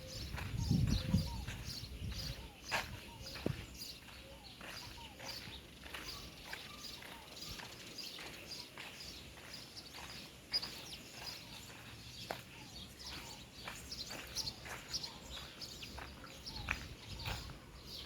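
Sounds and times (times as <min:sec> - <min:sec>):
low wind rumble: 0:00.0 - 0:02.5
small birds chirping: 0:00.0 - 0:18.0.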